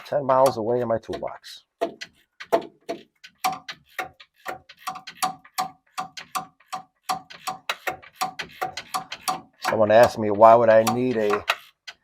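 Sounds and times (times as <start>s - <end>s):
hand ratchet clicking: 3.2s - 10.2s.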